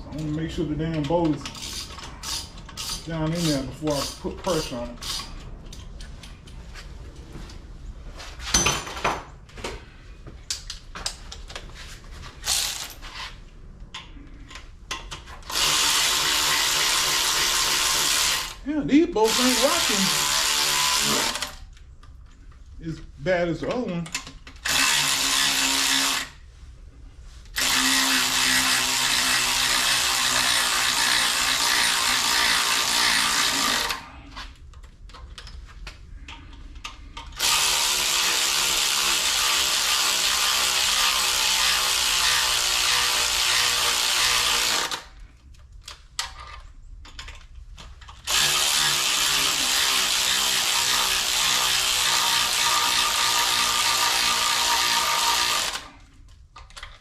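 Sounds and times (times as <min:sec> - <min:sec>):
cordless power tool whining: 0:19.2 - 0:21.6, 0:24.6 - 0:26.3, 0:27.6 - 0:34.1, 0:37.4 - 0:45.2, 0:48.2 - 0:56.0.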